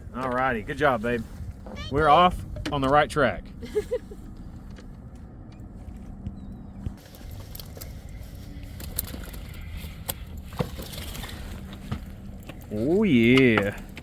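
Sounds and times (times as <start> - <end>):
boat engine rumble: 0.0 - 14.0
knocks and clicks of handled gear: 4.2 - 14.0.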